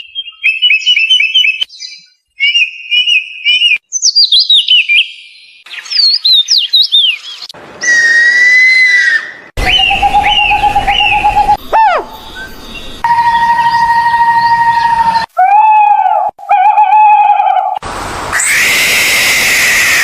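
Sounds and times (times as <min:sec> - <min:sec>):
rapid repeated bird chirps: 0:00.0 - 0:07.5, 0:09.6 - 0:13.9
downward-sweeping bird whistles: 0:07.8 - 0:15.3
long two-pitch bird whistle: 0:07.8 - 0:15.3
bird call falling notes: 0:07.8 - 0:17.8.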